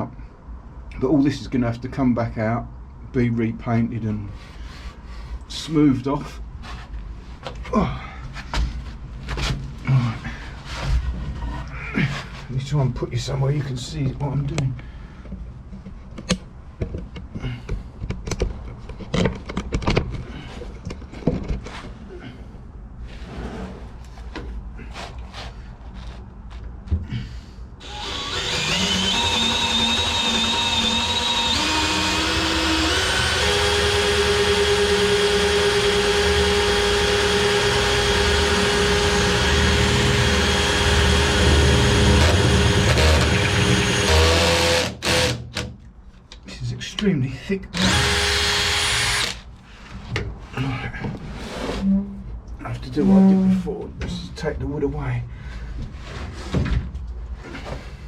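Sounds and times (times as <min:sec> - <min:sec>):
electric drill boring through steel: 0:27.8 - 0:45.6, 0:47.8 - 0:49.4.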